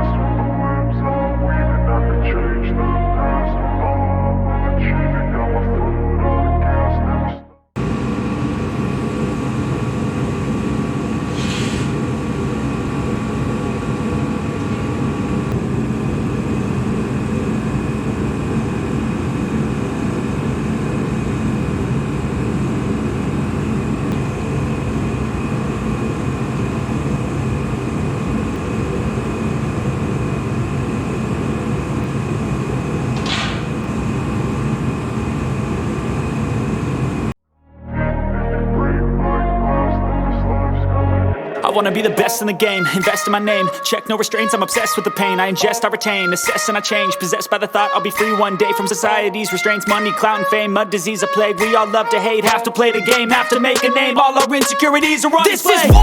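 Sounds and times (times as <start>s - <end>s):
brief hisses: 11.3s - 12.0s, 33.2s - 33.7s.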